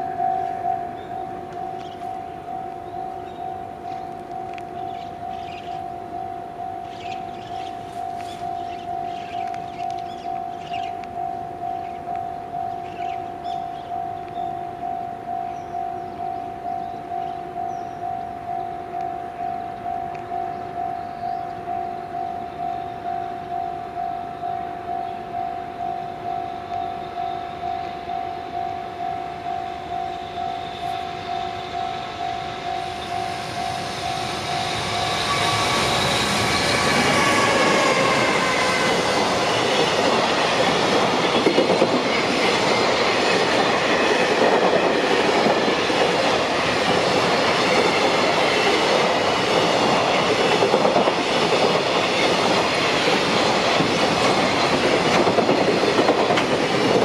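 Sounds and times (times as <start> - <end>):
level-crossing warning bell: 0.0 - 57.0
locomotive whine: 0.0 - 57.0
train wheels clacking on rails: 29.5 - 57.0.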